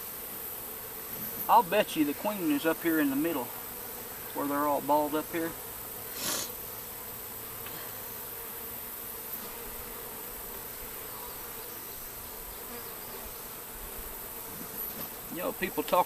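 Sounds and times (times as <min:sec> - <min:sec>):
bee swarm buzzing: 0:00.0 - 0:16.0.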